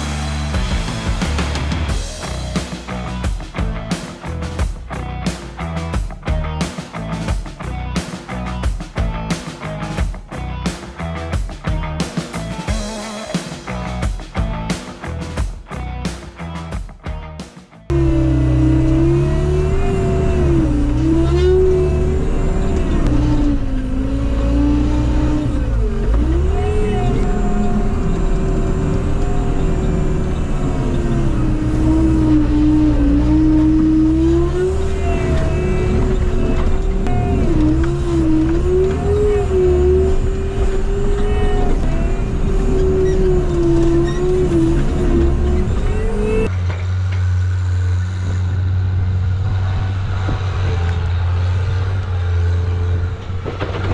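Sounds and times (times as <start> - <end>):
diesel engine and hydraulics: 17.9 - 53.9.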